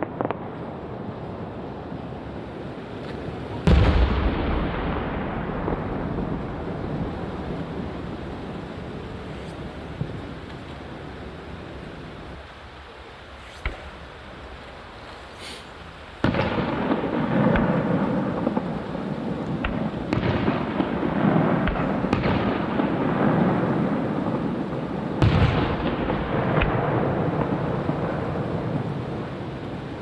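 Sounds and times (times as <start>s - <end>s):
fireworks bursting and crackling: 0.0s - 30.0s
sharp firework bangs: 3.2s - 8.7s, 16.2s - 30.0s.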